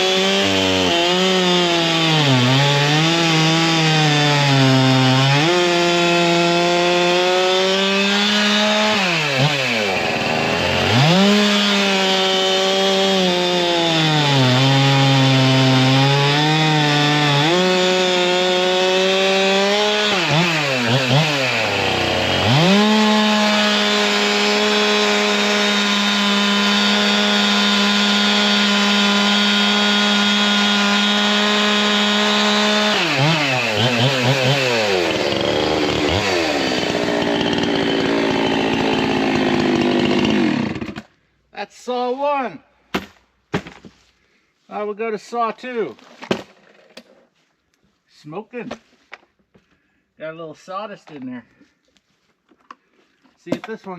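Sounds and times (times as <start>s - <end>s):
chainsaw cutting log: 0.0s - 41.1s.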